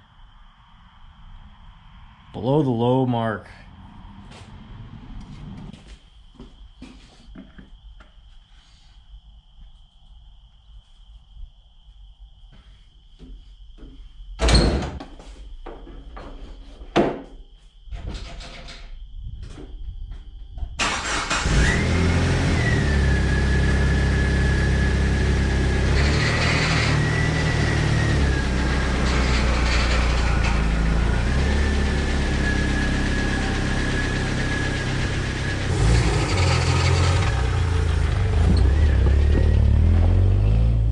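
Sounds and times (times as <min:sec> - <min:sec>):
engine starting and running: 0:20.8 - 0:40.9
high whine: 0:23.6 - 0:39.8.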